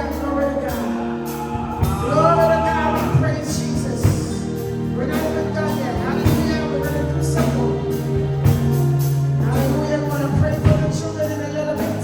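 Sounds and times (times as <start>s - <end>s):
people singing: 0.0s - 12.0s
sustained bass notes: 0.0s - 12.0s
percussion hits: 0.1s - 11.1s.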